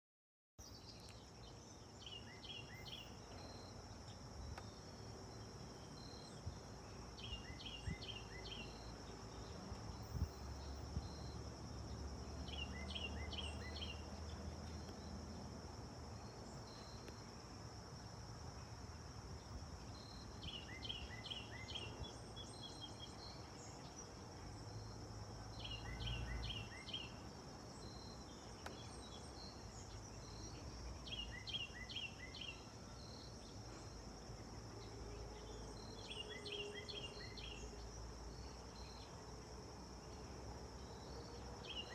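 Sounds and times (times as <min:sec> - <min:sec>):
high insect chorus: 0:00.6 - 0:41.9.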